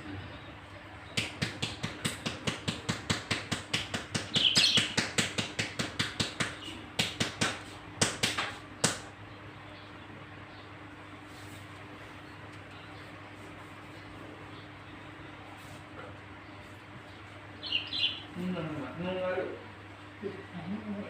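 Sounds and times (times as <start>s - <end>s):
rapid rhythmic tapping: 1.1s - 9.1s.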